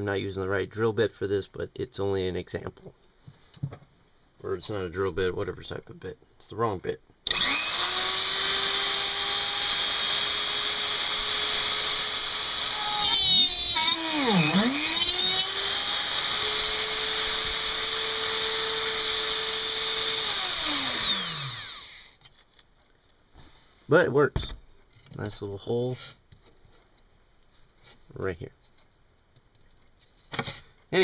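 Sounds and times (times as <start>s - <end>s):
rotary tool whining: 7.3s - 22.2s.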